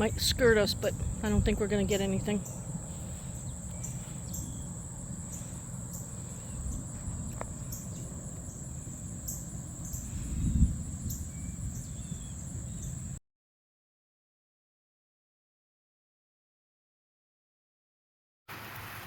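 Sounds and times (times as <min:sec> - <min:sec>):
crickets trilling: 0:00.0 - 0:13.2
low rumble: 0:00.0 - 0:13.2.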